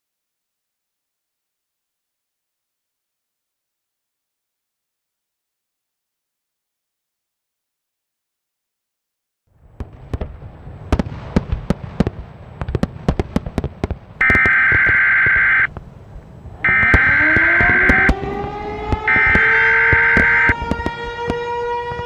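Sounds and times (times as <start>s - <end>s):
fireworks bangs and crackles: 9.6s - 22.0s
civil defense siren: 14.2s - 15.7s, 16.4s - 22.0s
digital alert tones: 14.2s - 15.7s, 16.7s - 18.1s, 19.1s - 20.5s.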